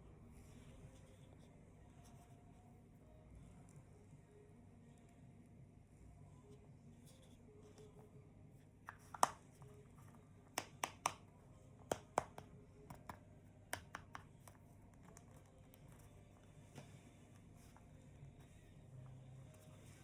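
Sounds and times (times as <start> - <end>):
hands clicking and tapping items: 8.9 - 9.7, 10.4 - 16.1.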